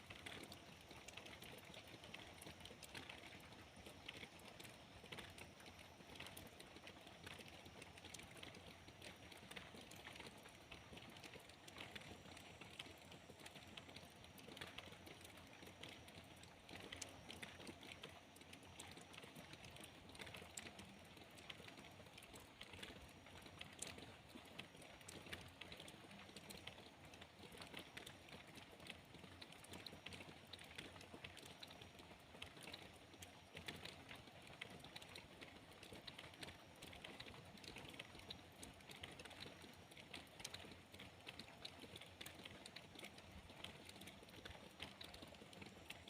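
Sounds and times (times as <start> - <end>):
rain drops ticking: 0.0 - 46.0.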